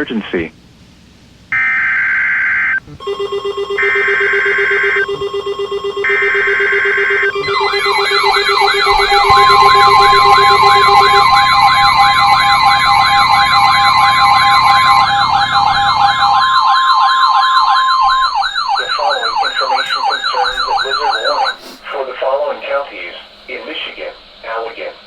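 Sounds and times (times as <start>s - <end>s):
fast-warbling alert tone: 2.7s - 21.6s
steady high tone: 2.7s - 24.7s
raspy digital data bursts: 5.8s - 21.7s.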